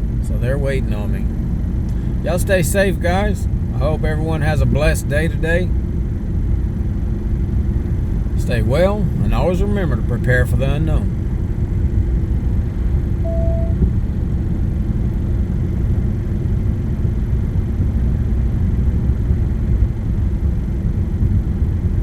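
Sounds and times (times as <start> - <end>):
road and engine rumble in car: 0.0 - 22.0
brief steady tone: 13.2 - 13.9.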